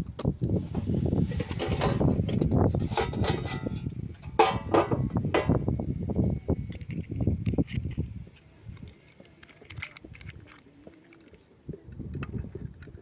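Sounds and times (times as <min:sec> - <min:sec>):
plastic pieces clicking: 0:06.7 - 0:08.1, 0:08.7 - 0:11.4.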